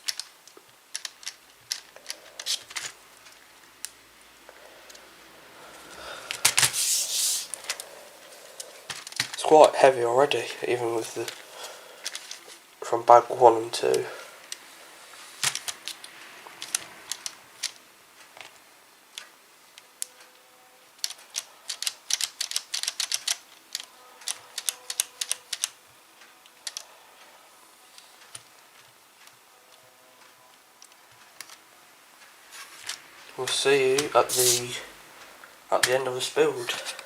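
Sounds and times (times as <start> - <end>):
plastic parts clicking: 0.0 - 4.0, 8.6 - 9.5, 12.0 - 12.6, 15.4 - 17.8, 21.0 - 25.8, 26.5 - 26.9, 30.8 - 31.6.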